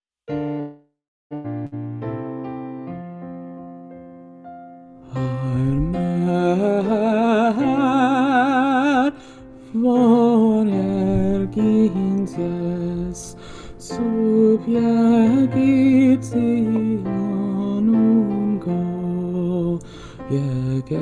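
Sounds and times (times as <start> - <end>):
person singing a hymn: 5.1 - 21.0.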